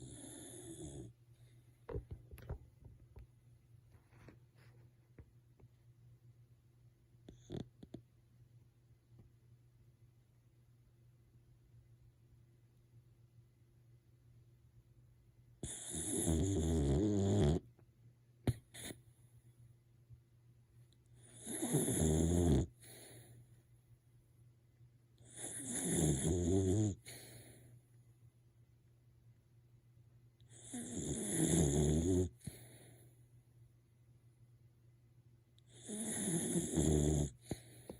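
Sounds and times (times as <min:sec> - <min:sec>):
dog snoring: 0:00.0 - 0:01.2, 0:07.2 - 0:08.0, 0:15.6 - 0:17.7, 0:18.5 - 0:19.0, 0:21.2 - 0:23.3, 0:25.2 - 0:27.7, 0:30.5 - 0:33.0, 0:35.6 - 0:37.9
soft clicks and knocks: 0:01.8 - 0:04.4.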